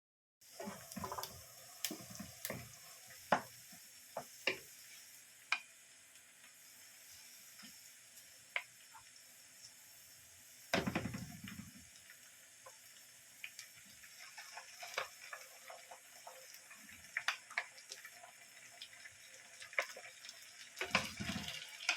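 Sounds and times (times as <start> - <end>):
water running from sink: 0.4 - 4.6, 14.0 - 21.9.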